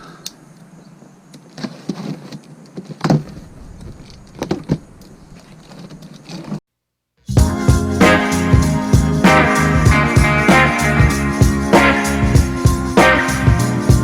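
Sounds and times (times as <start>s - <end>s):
knocks and clunks of parts handled: 1.4s - 6.6s.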